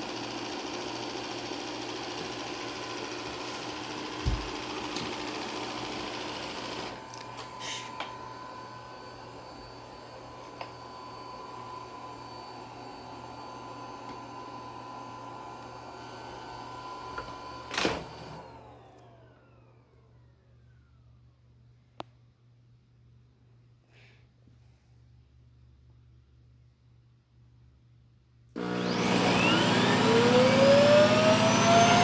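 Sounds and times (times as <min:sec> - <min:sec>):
suction motor whining: 0:00.0 - 0:19.7, 0:28.6 - 0:32.0.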